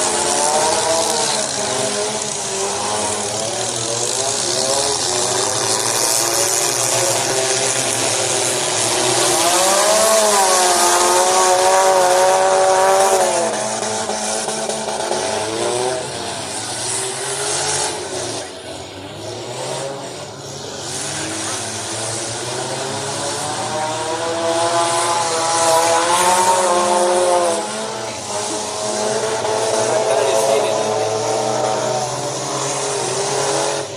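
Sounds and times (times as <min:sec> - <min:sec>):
car engines revving: 0:00.0 - 0:33.9.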